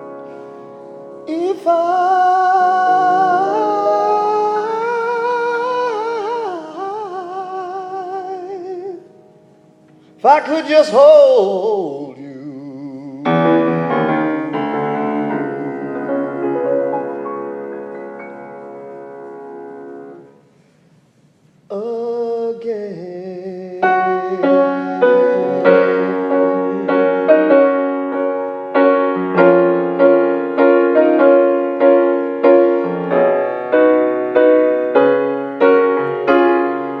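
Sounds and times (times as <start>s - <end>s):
keyboard chords: 0.0s - 6.2s, 13.3s - 20.4s, 23.8s - 37.0s.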